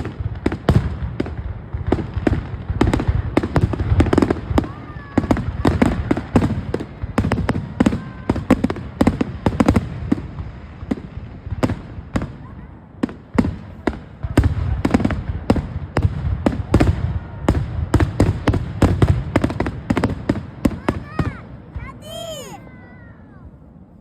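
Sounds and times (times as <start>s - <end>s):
fireworks bangs and crackles: 0.0s - 24.0s.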